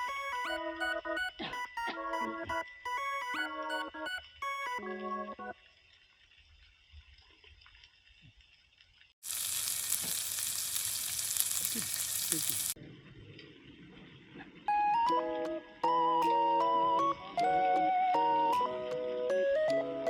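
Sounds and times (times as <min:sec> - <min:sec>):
steady hiss: 0:09.2 - 0:12.8.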